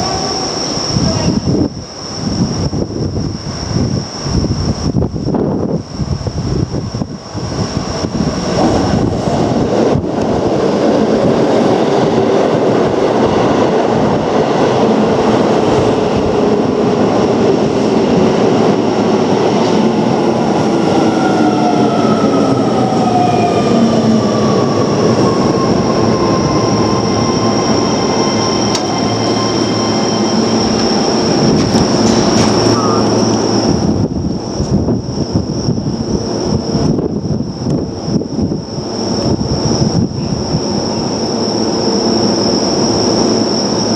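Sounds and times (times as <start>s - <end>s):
electric train running: 8.4s - 34.3s.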